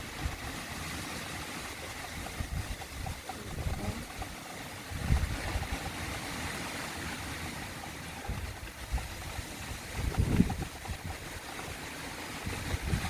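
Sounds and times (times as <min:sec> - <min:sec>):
strong wind buffeting microphone: 0:00.0 - 0:13.0.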